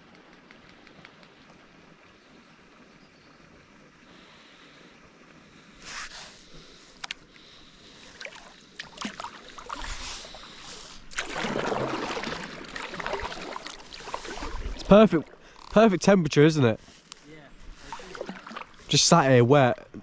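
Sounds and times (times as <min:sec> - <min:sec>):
soft hiss: 0:00.0 - 0:11.1
paddles splashing in water: 0:05.8 - 0:16.0, 0:16.8 - 0:20.0.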